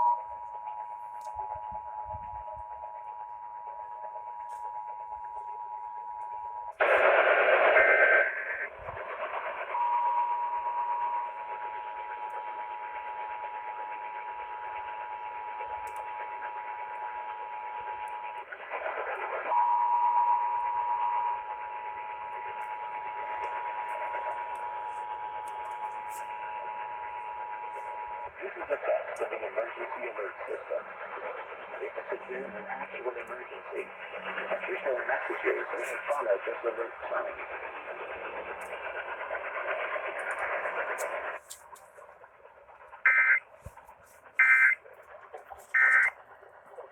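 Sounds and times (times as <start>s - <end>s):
burst of harsh noise: 6.8s - 9.7s, 43.1s - 43.4s, 44.4s - 44.8s, 45.7s - 46.1s
two-tone alert signal: 43.1s - 43.4s, 44.4s - 44.8s, 45.8s - 46.1s.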